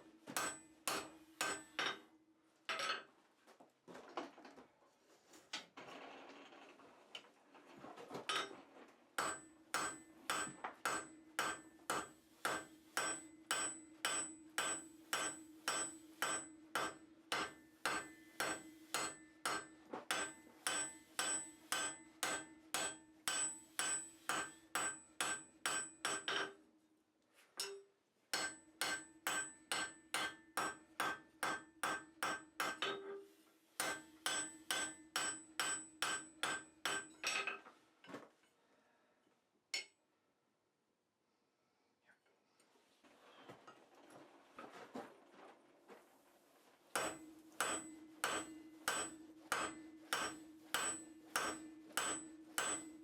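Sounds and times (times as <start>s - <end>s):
hammer striking steel on anvil: 0.3s - 2.1s, 9.2s - 26.6s, 27.6s - 33.1s, 33.8s - 37.4s, 39.8s - 40.0s, 46.9s - 53.0s
anvil ringing: 47.0s - 53.0s.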